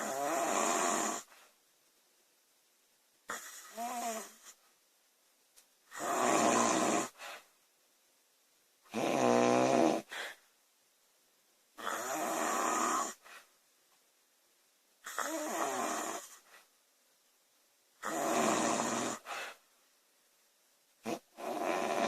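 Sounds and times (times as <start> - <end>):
woman snoring loudly: 0.0 - 1.3, 3.3 - 4.5, 5.9 - 7.2, 8.9 - 10.2, 11.8 - 13.2, 15.1 - 16.4, 18.0 - 19.3, 21.0 - 22.0.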